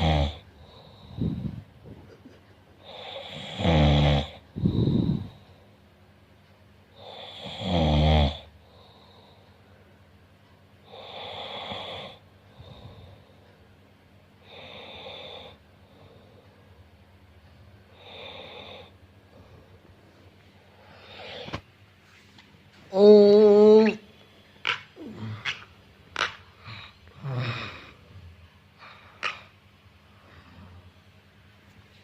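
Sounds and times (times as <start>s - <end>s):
person snoring: 0.0s - 1.6s, 2.8s - 5.4s, 7.0s - 8.5s, 10.9s - 13.1s, 25.0s - 25.6s, 26.6s - 28.2s.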